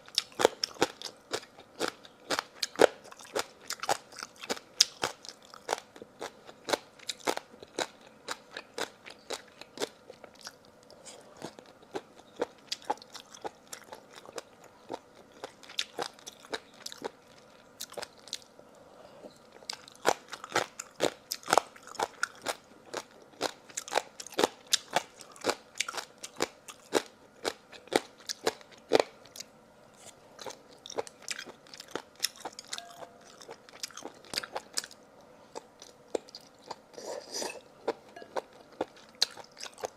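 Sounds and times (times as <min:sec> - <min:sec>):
person crunching food: 0:00.0 - 0:18.5, 0:19.6 - 0:39.9.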